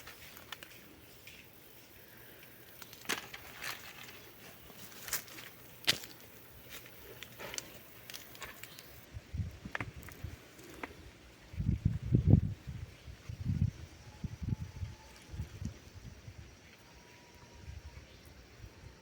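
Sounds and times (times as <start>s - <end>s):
dry plant material crackling: 0.0s - 11.0s.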